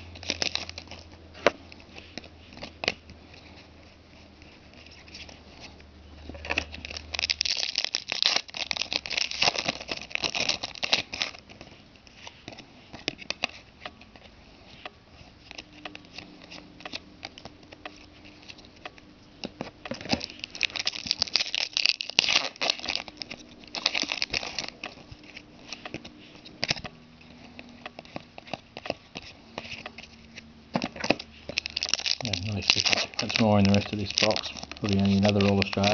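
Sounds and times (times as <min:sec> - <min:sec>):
wrapper crinkling and tearing: 0:00.0 - 0:03.7, 0:04.5 - 0:12.3, 0:19.6 - 0:35.9
cards rustling and clicking: 0:00.0 - 0:35.9.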